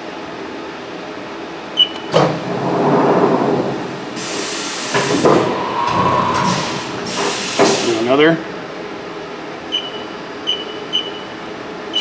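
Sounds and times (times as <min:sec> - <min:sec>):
tool changer clunks: 0:02.2 - 0:08.0
machine whine: 0:02.2 - 0:08.1
air hiss: 0:02.2 - 0:08.2.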